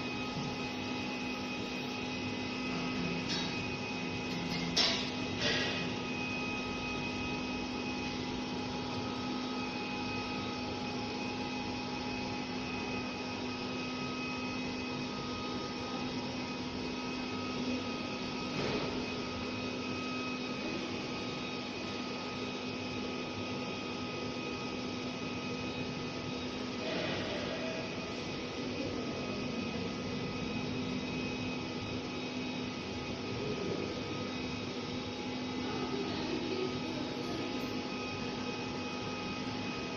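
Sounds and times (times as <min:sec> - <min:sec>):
constant low hum: 0:00.0 - 0:07.2
cooling fans whirring: 0:00.0 - 0:39.9.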